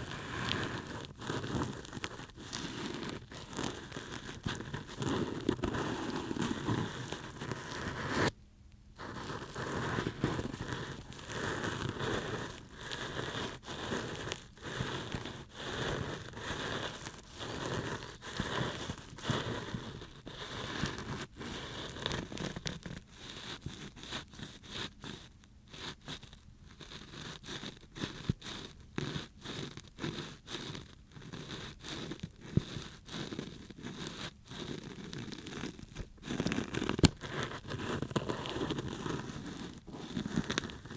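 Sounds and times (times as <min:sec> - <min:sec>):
ear pick scraping microphone: 0:00.0 - 0:08.4, 0:09.0 - 0:23.0.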